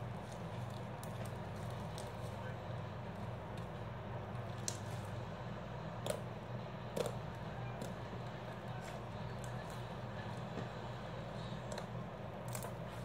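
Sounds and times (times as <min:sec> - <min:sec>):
hands squishing slime: 0:00.0 - 0:05.2.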